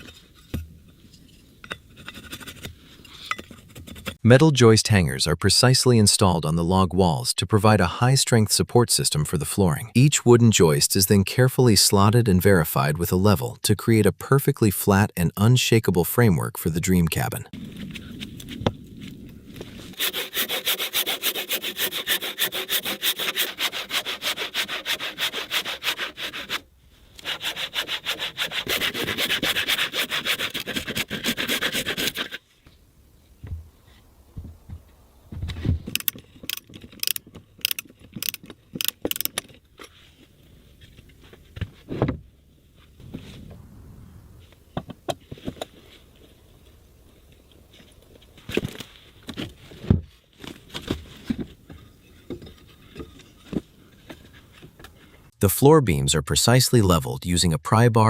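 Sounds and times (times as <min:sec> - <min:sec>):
hand saw cutting wood: 0:20.0 - 0:32.5.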